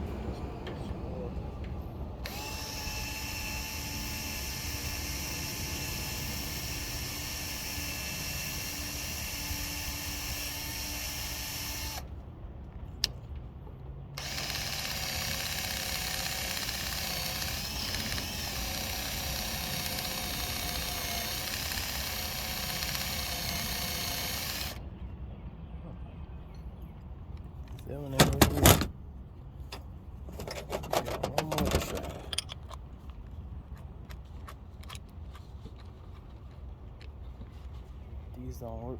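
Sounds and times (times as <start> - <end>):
drill click: 2.2 - 12.0, 14.2 - 24.8
power drill running: 2.2 - 12.1, 14.2 - 24.8.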